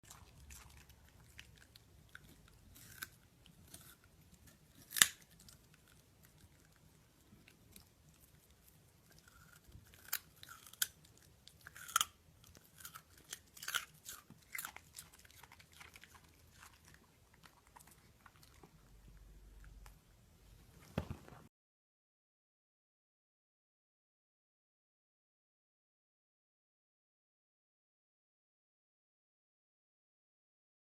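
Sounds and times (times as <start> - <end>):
dog crunching a carrot: 0.0 - 20.0.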